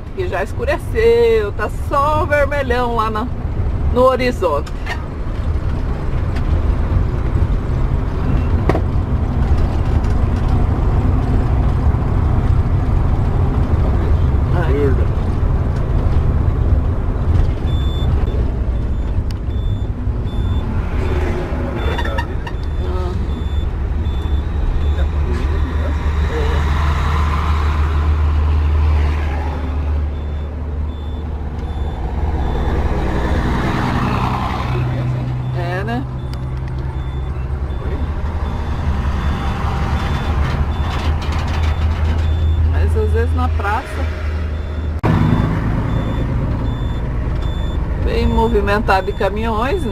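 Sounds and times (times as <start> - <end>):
bus engine rumbling: 0.0 - 49.9
high electronic beep: 17.7 - 20.7, 21.8 - 25.8, 30.1 - 33.3, 35.4 - 41.0, 41.6 - 42.9, 44.5 - 49.9.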